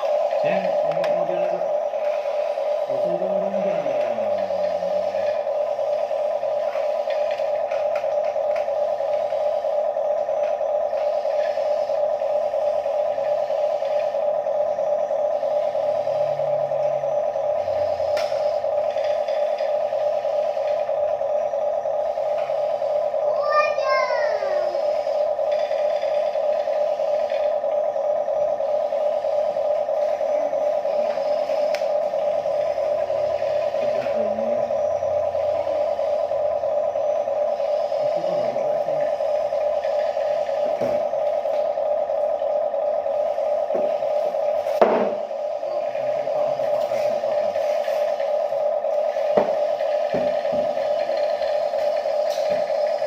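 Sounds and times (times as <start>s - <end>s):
small electric motor buzzing: 22.0s - 27.7s.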